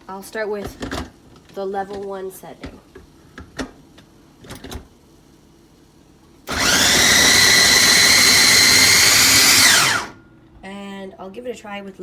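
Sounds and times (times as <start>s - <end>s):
food processor motor whining: 6.5s - 10.2s.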